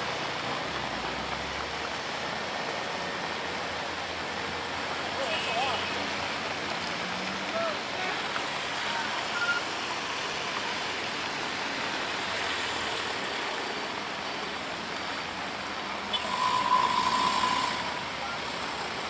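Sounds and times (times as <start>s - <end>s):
heavy rain pouring: 0.0s - 19.0s
steady whine: 16.1s - 19.0s.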